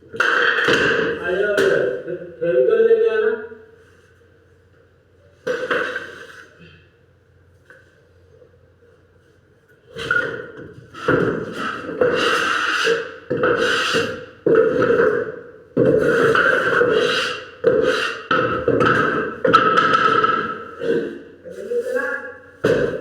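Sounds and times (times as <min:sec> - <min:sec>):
hand tool rasping on wood: 0:11.0 - 0:14.9, 0:15.8 - 0:18.8.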